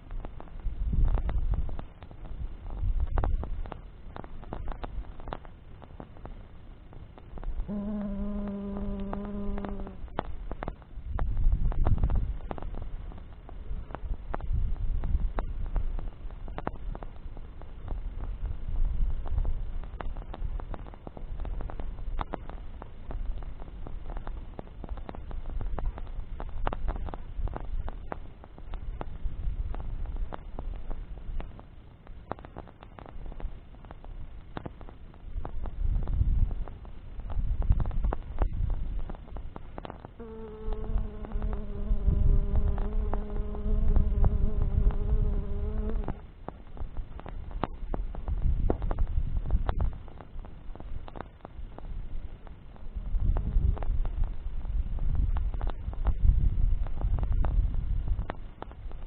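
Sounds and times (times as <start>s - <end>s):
bonfire crackling: 0.0s - 59.0s
sharp pops and snaps: 0.0s - 59.0s
low rumble: 7.4s - 16.9s, 40.2s - 50.0s
insect buzzing: 7.6s - 10.3s, 40.2s - 46.2s.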